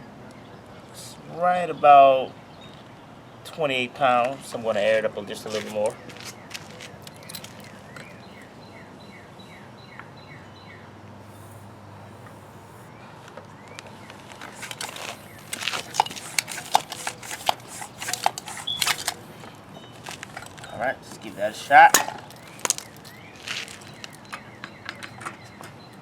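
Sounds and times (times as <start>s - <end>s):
bird chirping: 5.4s - 11.5s, 12.9s - 26.0s
sharp clicks and knocks: 14.2s - 26.0s.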